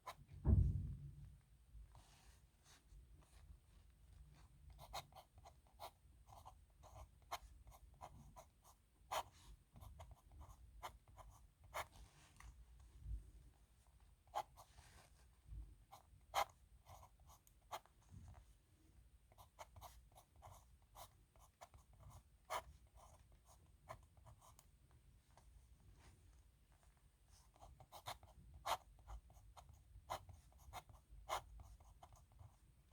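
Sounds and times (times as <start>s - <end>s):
pen scratching on paper: 4.7s - 12.0s, 19.4s - 24.6s, 27.4s - 32.6s.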